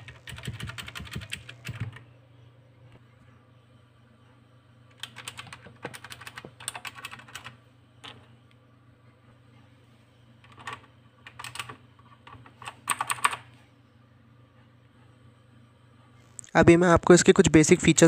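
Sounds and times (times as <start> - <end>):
mechanical keyboard clicking: 0.0 - 2.0, 4.9 - 8.2, 10.5 - 13.4.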